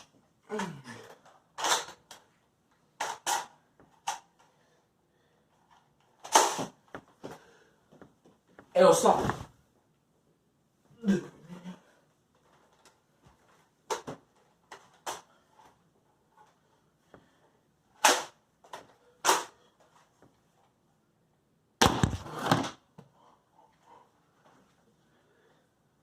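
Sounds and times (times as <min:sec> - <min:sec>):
toy blaster firing darts: 0:06.2 - 0:06.7, 0:18.0 - 0:18.4.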